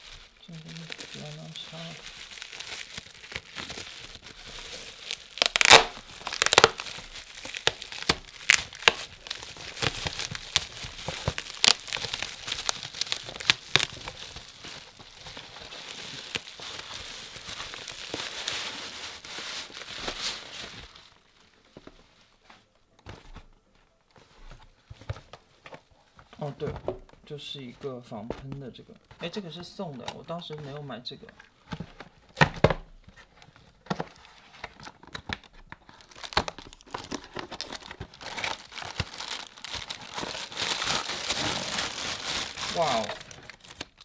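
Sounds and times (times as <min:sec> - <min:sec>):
packaging crinkling and tearing: 0:00.0 - 0:22.2, 0:31.4 - 0:44.0.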